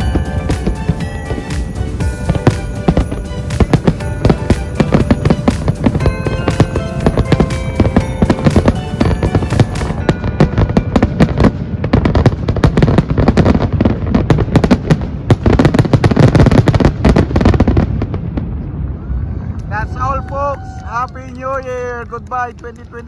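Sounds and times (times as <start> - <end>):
music: 0.0 - 12.2
fireworks banging and crackling: 0.0 - 18.8.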